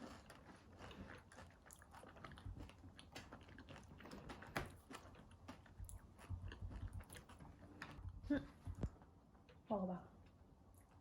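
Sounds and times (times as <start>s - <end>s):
person chewing crunchy cookie: 0.0s - 8.2s.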